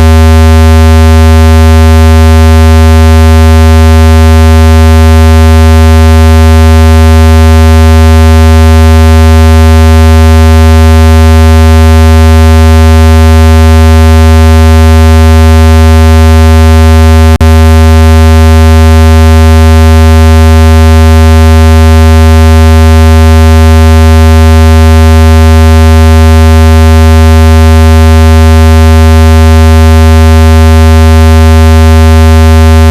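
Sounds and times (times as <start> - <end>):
low buzzing tone: 0.0 - 21.9.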